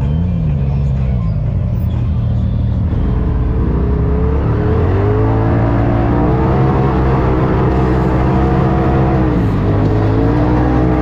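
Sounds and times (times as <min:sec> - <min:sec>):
rush of driving noise: 0:00.0 - 0:11.0
engine accelerating under load: 0:01.8 - 0:11.0.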